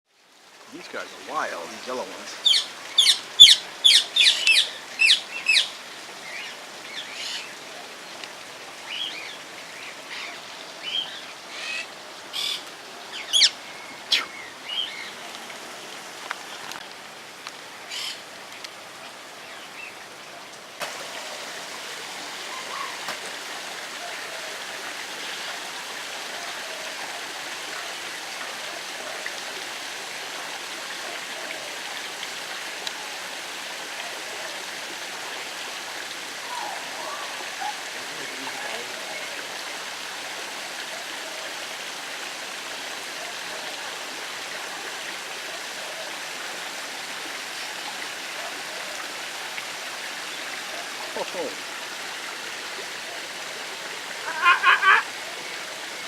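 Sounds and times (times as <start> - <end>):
running water rushing: 0.1 - 56.0
shrill bird calls: 2.4 - 5.7, 13.2 - 14.9.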